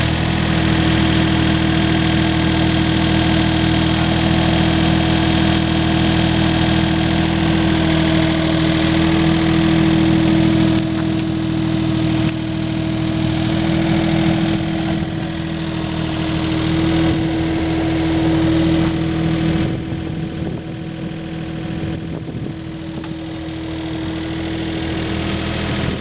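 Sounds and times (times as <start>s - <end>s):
mini loader engine running: 0.0s - 26.0s
hydraulic whine: 6.1s - 19.8s, 23.0s - 26.0s.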